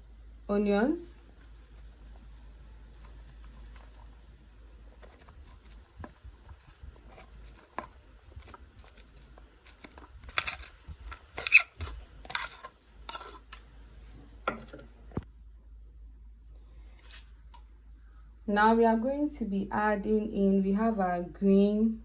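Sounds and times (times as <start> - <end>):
kitchenware clinks and scrapes: 4.9 - 13.6.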